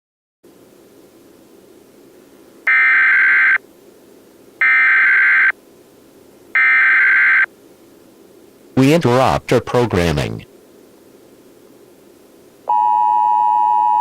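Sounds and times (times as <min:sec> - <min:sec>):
low steady hiss: 0:00.5 - 0:13.3
digital data tone bursts: 0:02.7 - 0:03.6.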